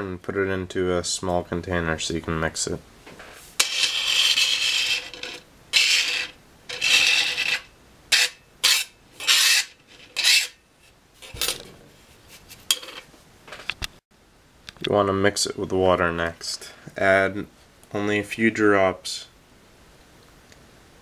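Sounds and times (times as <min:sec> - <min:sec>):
powder scraped on hard surface: 0:03.3 - 0:07.7.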